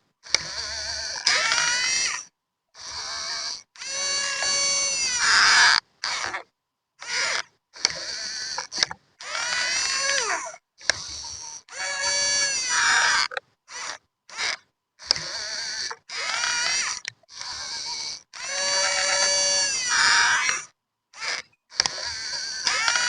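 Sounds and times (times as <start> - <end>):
model excavator motors whining: 0.2 - 6.4, 7.0 - 23.0.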